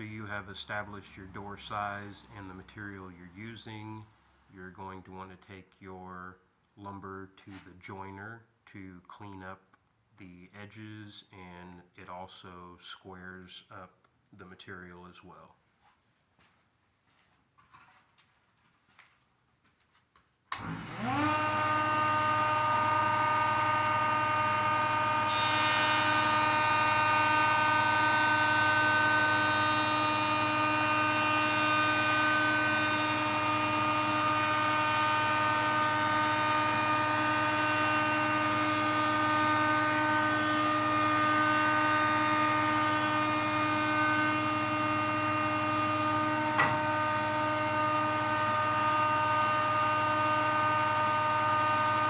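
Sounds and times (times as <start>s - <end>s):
jointer motor hum: 20.5s - 52.0s
board cutting hiss: 25.1s - 40.9s.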